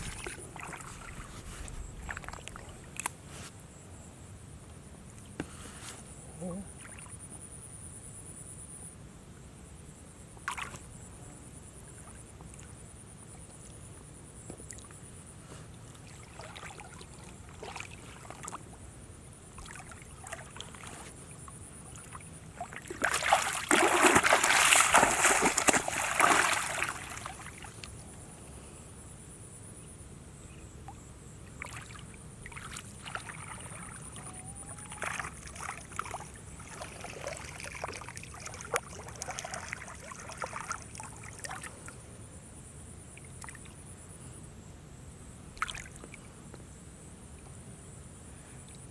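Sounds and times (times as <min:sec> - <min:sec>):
water sloshing and splashing: 0:00.0 - 0:03.5, 0:15.9 - 0:18.8, 0:19.5 - 0:27.9, 0:31.6 - 0:42.0, 0:45.6 - 0:46.3.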